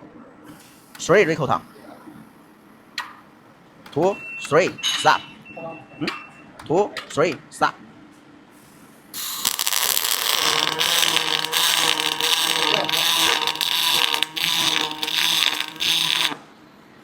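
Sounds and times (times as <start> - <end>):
machinery rattling hiss: 9.2 - 16.4.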